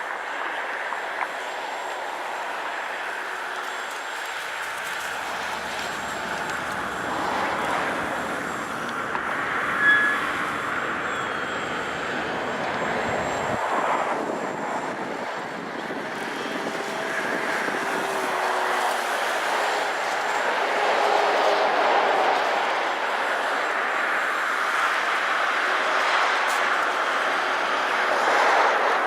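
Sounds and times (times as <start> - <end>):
model airplane motor whirring: 1.1 - 20.7
brief high-pitched tone: 9.6 - 13.4.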